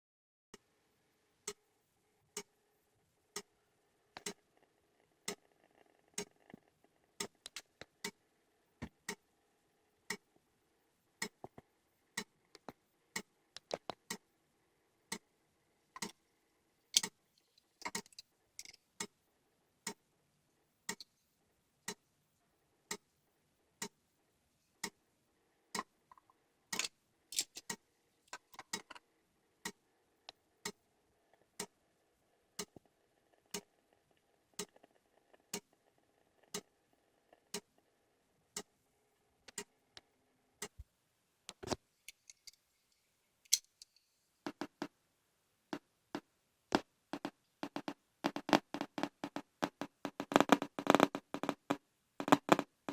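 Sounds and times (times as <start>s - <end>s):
geiger counter clicks: 4.2s - 8.2s, 32.6s - 35.8s, 46.7s - 52.9s.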